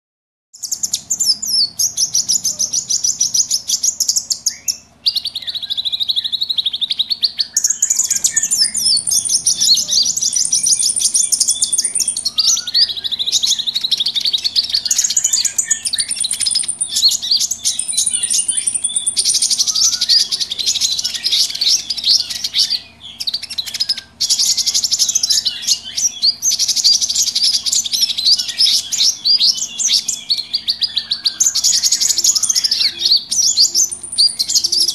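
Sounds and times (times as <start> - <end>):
small birds chattering: 0.6 - 34.9.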